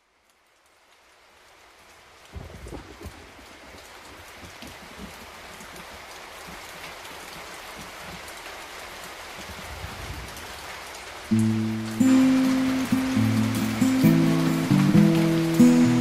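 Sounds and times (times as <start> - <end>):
rain falling: 0.0 - 16.0
music with sustained chords: 11.3 - 16.0.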